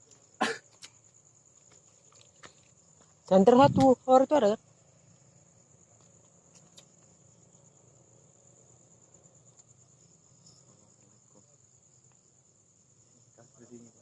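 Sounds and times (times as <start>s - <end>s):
faint ticks: 0.0s - 3.2s, 5.9s - 7.3s, 9.2s - 9.9s
crickets chirring: 0.0s - 14.0s.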